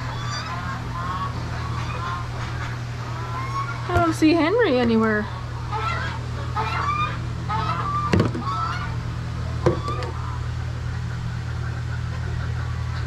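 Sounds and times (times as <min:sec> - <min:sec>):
poultry calling: 0:00.0 - 0:13.0
sharp knocks: 0:08.1 - 0:08.5.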